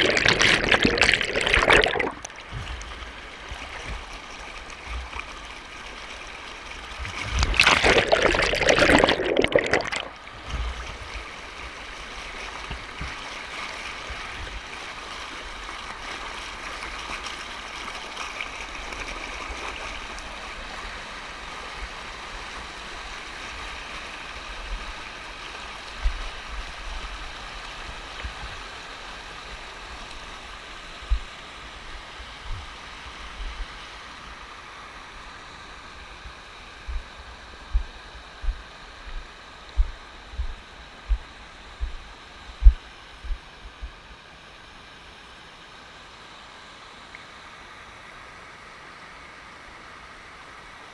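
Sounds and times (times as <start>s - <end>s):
water rushing over cascades: 0.0s - 36.0s.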